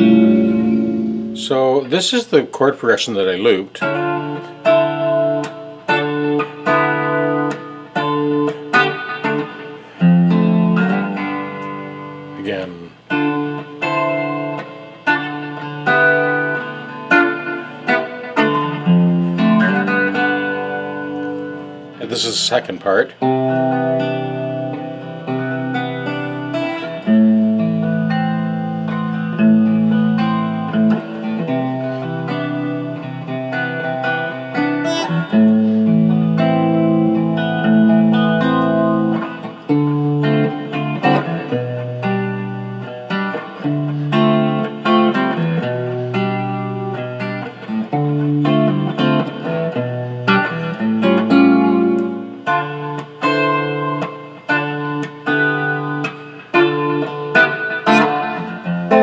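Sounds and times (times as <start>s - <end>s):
electric guitar ringing chords: 0.0s - 2.0s, 3.8s - 22.1s, 23.2s - 59.0s.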